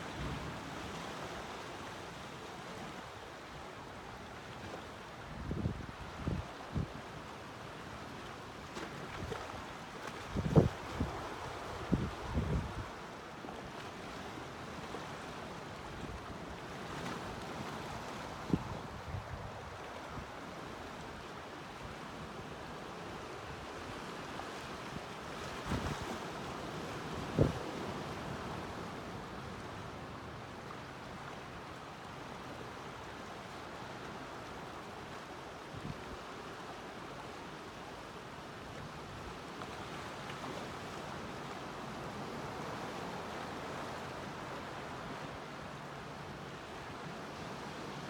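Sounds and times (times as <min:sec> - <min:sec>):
small waves breaking on shore: 0:00.0 - 0:48.0
ocean surf washing: 0:09.9 - 0:48.0.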